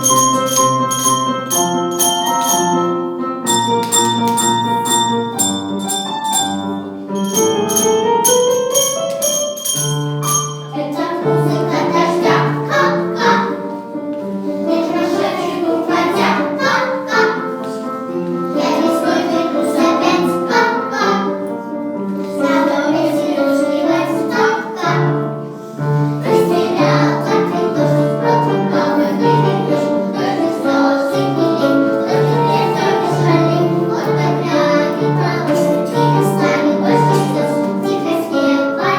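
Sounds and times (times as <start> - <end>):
children singing together: 0.0 - 9.2, 9.8 - 38.9
chiming bell-like instrumental: 0.0 - 11.5.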